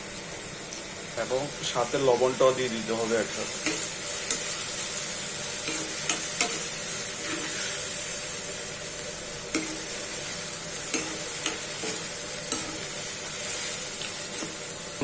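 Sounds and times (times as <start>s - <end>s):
paste sizzling in a hot pan: 0.0s - 15.0s.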